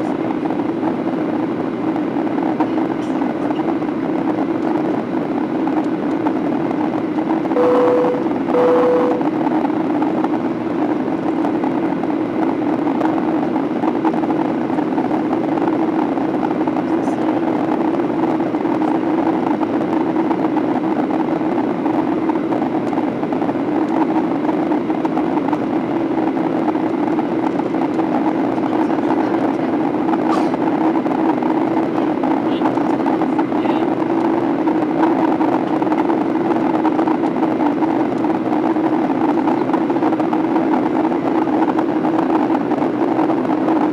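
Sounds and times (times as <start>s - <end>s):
jet engine drone in cabin: 0.0s - 43.9s
low hum: 7.5s - 9.8s.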